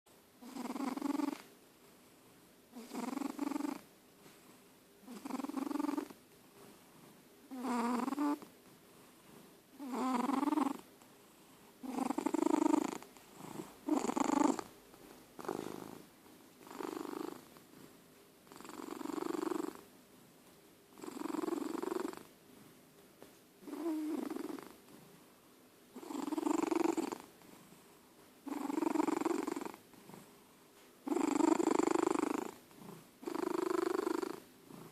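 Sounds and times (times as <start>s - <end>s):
cat snoring: 0.4s - 1.5s, 2.7s - 3.9s, 5.0s - 6.2s, 7.5s - 8.5s, 9.8s - 10.9s, 11.8s - 14.7s, 15.4s - 17.5s, 18.5s - 19.8s, 21.0s - 22.3s, 23.6s - 24.8s, 26.0s - 30.3s, 31.0s - 34.9s.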